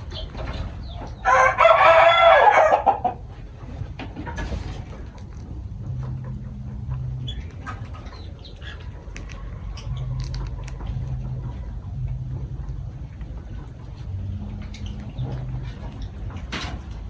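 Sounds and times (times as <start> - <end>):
low hum: 3.2 - 17.0
small clicks and scratching: 3.8 - 17.0
lovebirds chirping: 6.3 - 10.8, 14.0 - 16.3.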